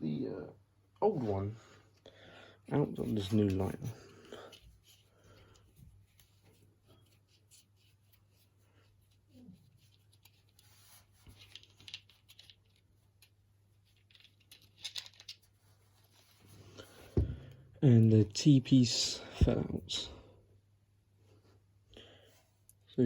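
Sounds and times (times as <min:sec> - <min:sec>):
faint rustling and clicks: 0:03.0 - 0:18.2.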